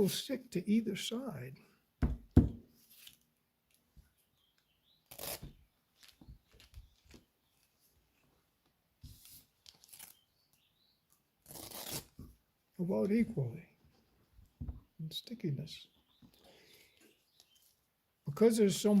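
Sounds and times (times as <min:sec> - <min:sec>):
knock: 0:02.0 - 0:02.6
velcro ripping: 0:05.0 - 0:06.9, 0:09.6 - 0:10.3, 0:11.4 - 0:12.2.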